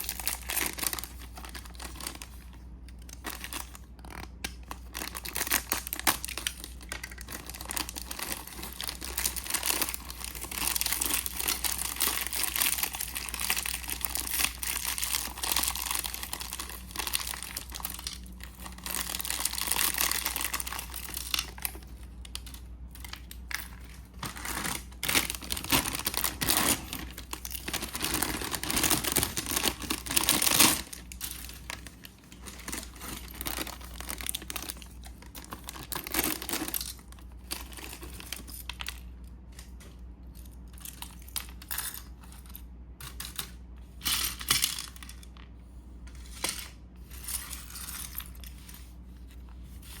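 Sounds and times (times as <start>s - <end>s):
plastic packaging crinkling and tearing: 0.0s - 39.9s.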